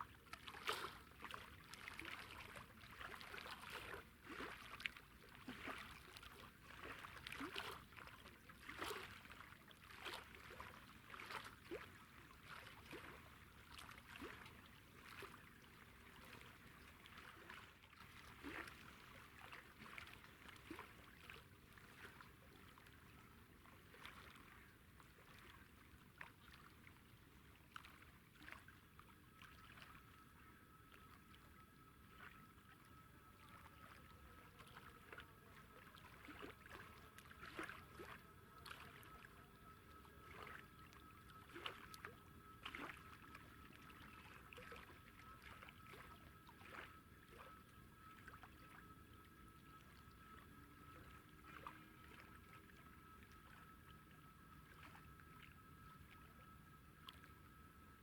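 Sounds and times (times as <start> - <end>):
faint steady high tone: 5.4 - 58.0.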